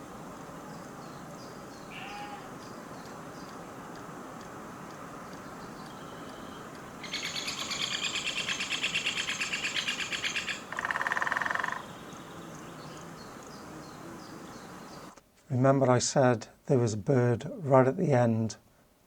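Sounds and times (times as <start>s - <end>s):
bird pulsed call: 0.7s - 4.0s, 4.9s - 15.2s
woodpecker drumming: 1.9s - 15.2s.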